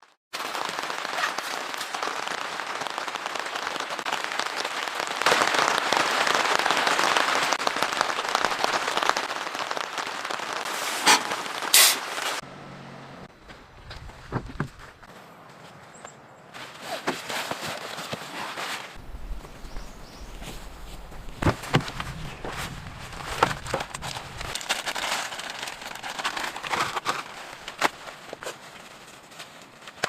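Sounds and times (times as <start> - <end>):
heavy rain falling: 0.4 - 12.4, 19.0 - 28.1
soft thumps: 13.4 - 15.1.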